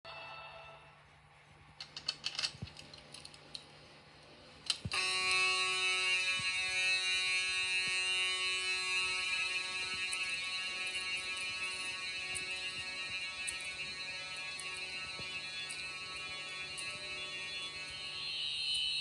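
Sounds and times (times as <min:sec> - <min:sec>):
fire alarm horn blaring: 0:04.9 - 0:19.0.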